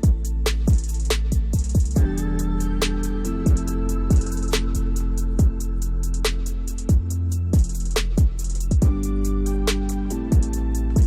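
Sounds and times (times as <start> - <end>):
deep kick drums: 0.0 - 2.3, 3.5 - 4.5, 5.4 - 5.7, 6.8 - 9.1, 10.3 - 11.0
held bass notes: 0.0 - 11.0
ticking hi-hats: 0.0 - 11.0.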